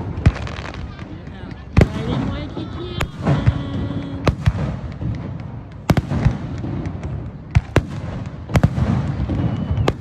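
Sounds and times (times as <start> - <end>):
fireworks bangs: 0.0 - 10.0
fireworks crackles: 0.0 - 10.0.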